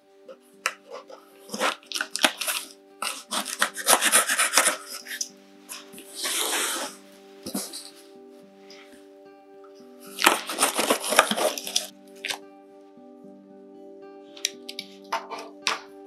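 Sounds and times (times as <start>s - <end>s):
background music: 0.0s - 16.0s
cardboard packaging rustling: 0.6s - 8.0s, 10.0s - 12.4s.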